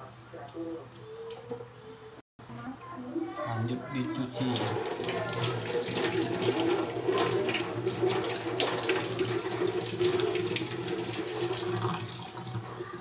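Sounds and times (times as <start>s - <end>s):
tap water running into a sink: 4.2s - 13.0s
small water splashes: 4.3s - 13.0s.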